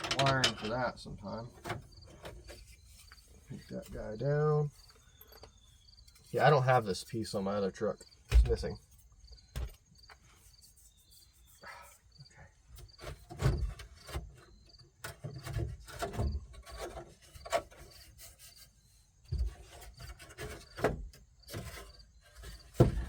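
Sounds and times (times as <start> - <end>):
insects chirping: 0.1 - 15.4.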